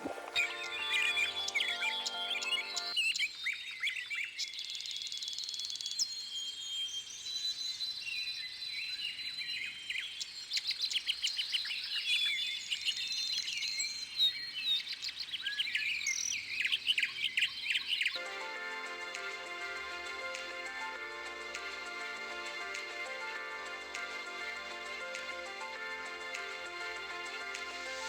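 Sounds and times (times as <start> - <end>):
birds chirping: 0.0 - 3.1.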